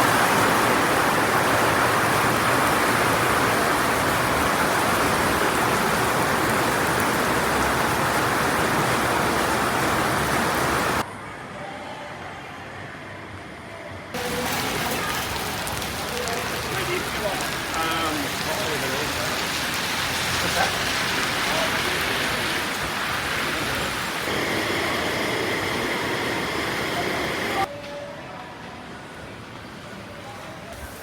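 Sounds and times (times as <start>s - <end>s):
fine rain patter: 0.0s - 11.0s, 14.2s - 27.7s
heavy rain pouring: 0.0s - 11.0s, 14.2s - 27.7s.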